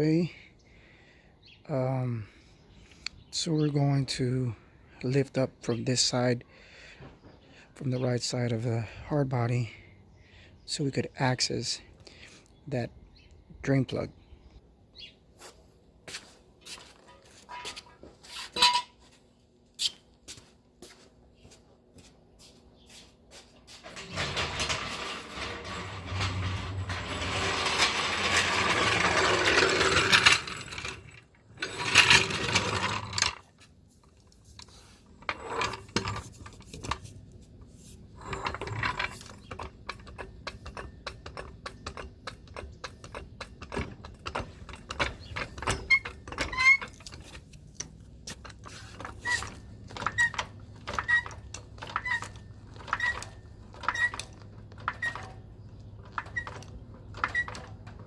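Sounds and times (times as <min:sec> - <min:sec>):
jack scraping and rolling: 0:16.9 - 0:19.1, 0:23.6 - 0:58.0.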